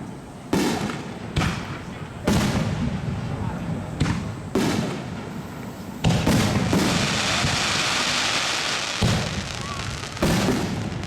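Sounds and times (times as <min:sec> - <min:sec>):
crackling hiss of stars: 0:00.0 - 0:11.0
firework shells bursting: 0:04.0 - 0:11.0.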